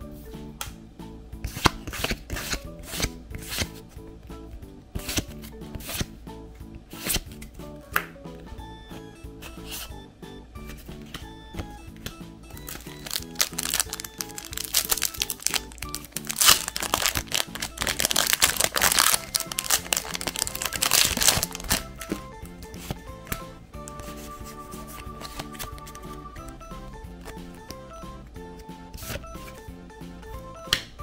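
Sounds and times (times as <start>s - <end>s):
background music: 0.0s - 31.0s
foil wrappers crinkling and tearing: 12.6s - 22.2s.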